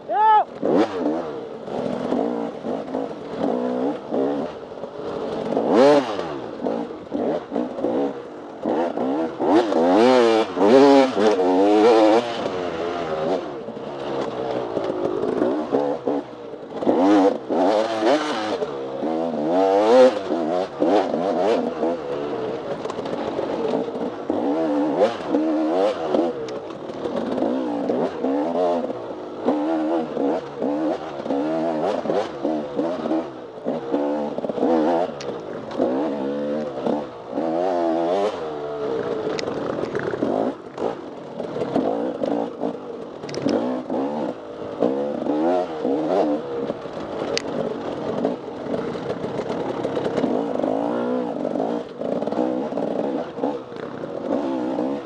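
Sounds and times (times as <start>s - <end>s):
dirt bike engine revving: 0.4s - 55.0s.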